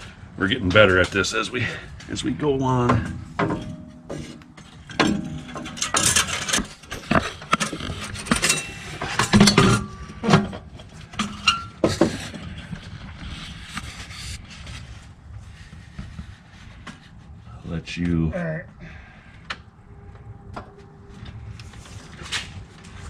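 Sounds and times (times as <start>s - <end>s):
metal clinks and scrapes of exhaust parts: 0.0s - 17.1s.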